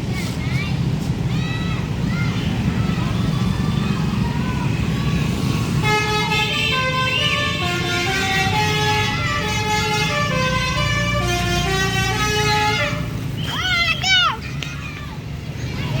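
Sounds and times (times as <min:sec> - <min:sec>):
vehicle engine rumble: 0:00.0 - 0:16.0
musical horn playing a tune: 0:05.8 - 0:13.1.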